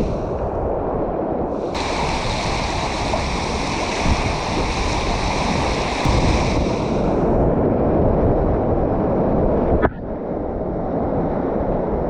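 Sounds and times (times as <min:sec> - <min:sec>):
high water hiss: 0:00.0 - 0:00.3, 0:01.6 - 0:07.5
low water rumble: 0:00.0 - 0:12.0
whitewater rushing: 0:01.6 - 0:07.5.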